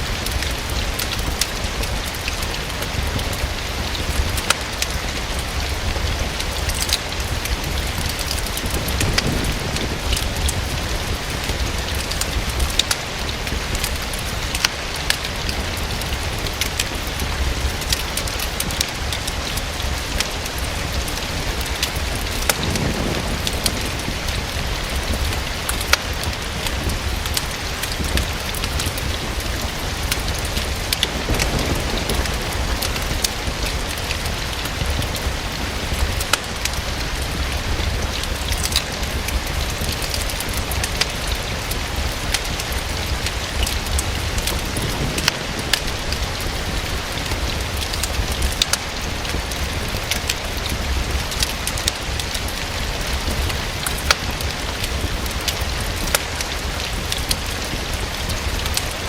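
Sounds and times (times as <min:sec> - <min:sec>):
steady rain: 0:00.0 - 0:59.0
wood fire crackling: 0:00.0 - 0:59.0.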